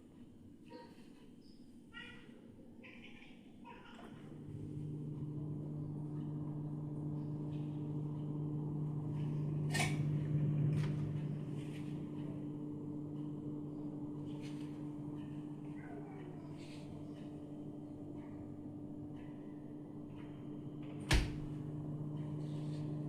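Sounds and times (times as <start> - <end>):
refrigerator humming: 4.2 - 23.0.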